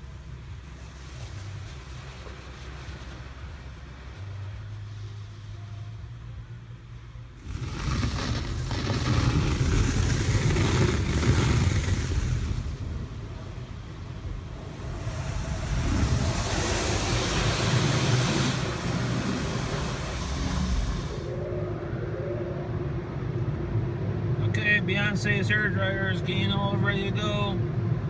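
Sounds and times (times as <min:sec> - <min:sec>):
water spraying on car: 0:00.0 - 0:21.7
low rumble: 0:00.0 - 0:28.0.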